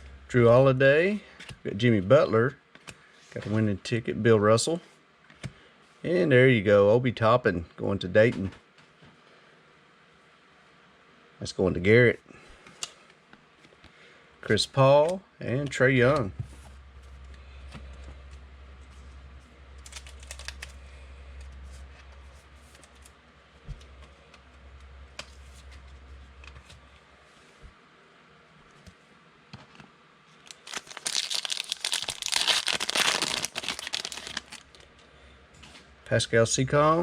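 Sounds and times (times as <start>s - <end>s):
plastic wrapper crinkling and tearing: 19.8s - 20.8s, 30.4s - 34.9s
trading cards handled: 19.8s - 23.1s, 30.5s - 34.8s.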